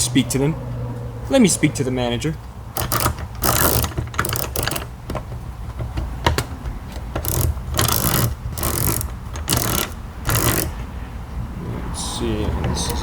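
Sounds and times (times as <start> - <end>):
rasping ratchet-like tool bursts: 2.7 - 5.0, 7.0 - 10.8.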